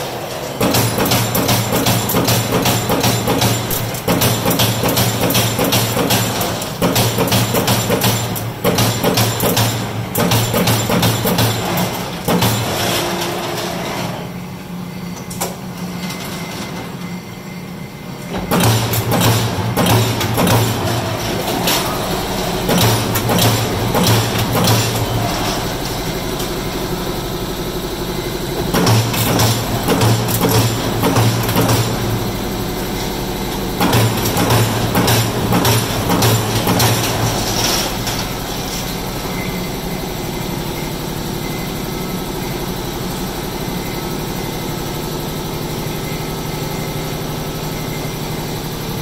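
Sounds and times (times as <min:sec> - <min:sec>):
punch press mechanical hum: 0:00.0 - 0:49.0
punch press strikes: 0:18.5 - 0:21.0, 0:21.6 - 0:25.2, 0:28.6 - 0:32.2.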